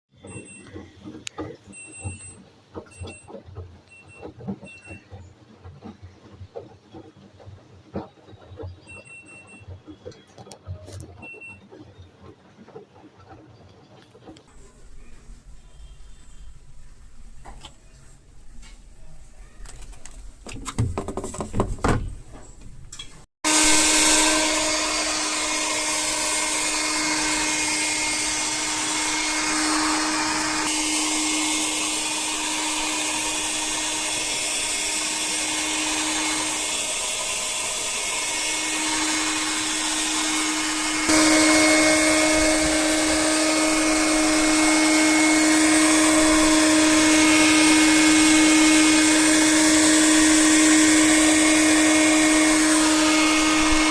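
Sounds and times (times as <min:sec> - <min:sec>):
small motor humming: 0:23.5 - 0:53.9.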